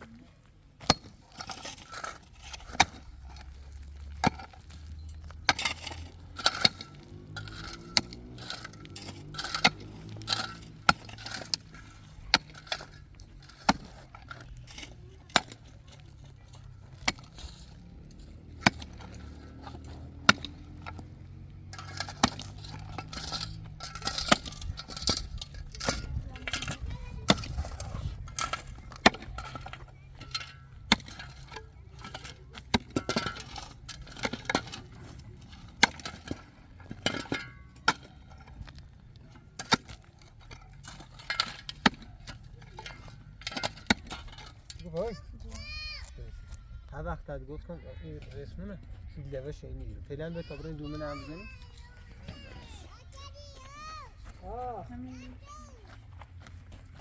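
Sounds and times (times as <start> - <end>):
scraping and shuffling: 0.0 - 57.0
sharp knocks and clinks: 0.8 - 46.0.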